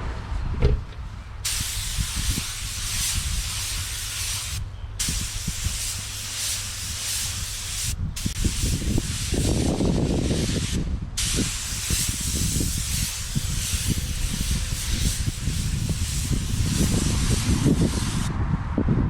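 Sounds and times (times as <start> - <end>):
paint spray gun hissing: 1.4 - 18.3.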